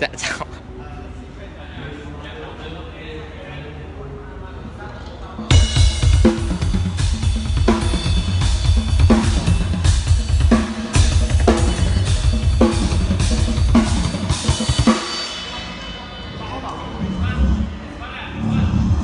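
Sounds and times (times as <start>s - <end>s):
bass drum: 5.5s - 14.9s
cymbal wash: 5.5s - 18.5s.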